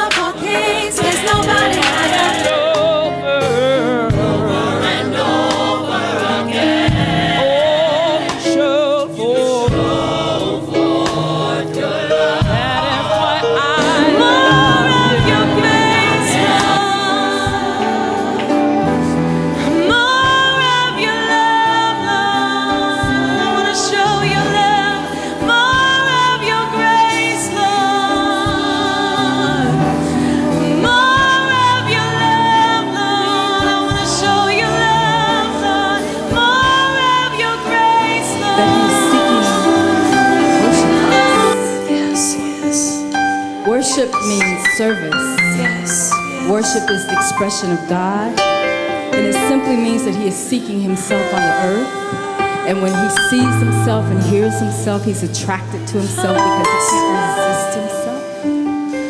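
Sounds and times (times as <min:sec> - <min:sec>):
gospel choir singing: 0:00.0 - 0:59.0
band playing: 0:13.4 - 0:19.4, 0:38.3 - 0:41.8, 0:52.7 - 0:58.3.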